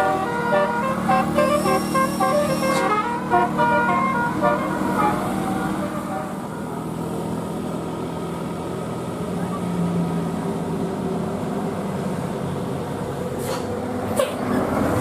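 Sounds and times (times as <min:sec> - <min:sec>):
multi-tone bus horn melody: 0:00.0 - 0:06.9
bus engine running: 0:00.0 - 0:15.0
traffic: 0:00.0 - 0:15.0.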